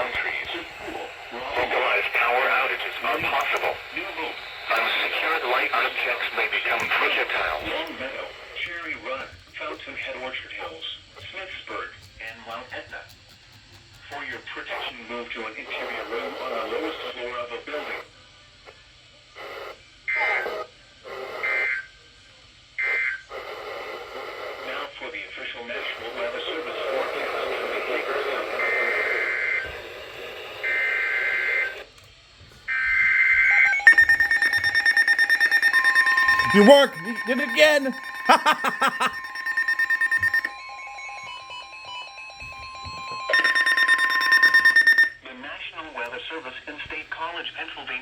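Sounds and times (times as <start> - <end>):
rapid alarm beeping: 0.0 - 9.0, 32.7 - 45.2
warbling digital data tones: 33.4 - 45.2.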